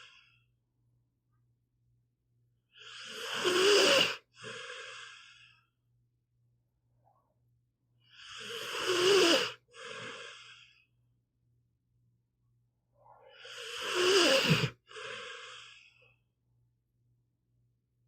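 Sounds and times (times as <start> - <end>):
dog snoring: 2.8 - 5.2, 8.2 - 10.6, 13.3 - 15.8.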